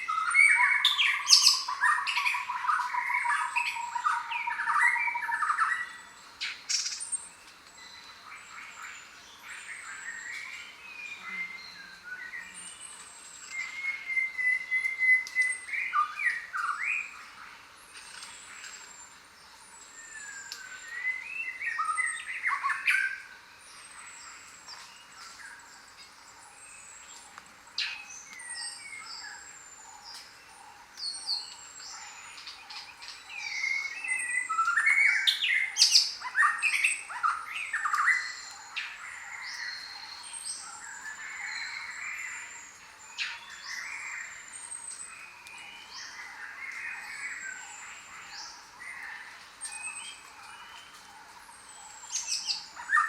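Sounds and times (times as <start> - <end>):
jungle birds calling: 0.0 - 53.0.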